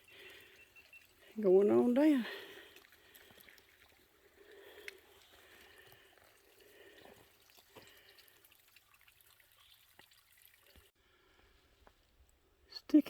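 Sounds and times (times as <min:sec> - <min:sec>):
faint water trickle: 0:00.0 - 0:13.0
light ticks: 0:04.8 - 0:05.0.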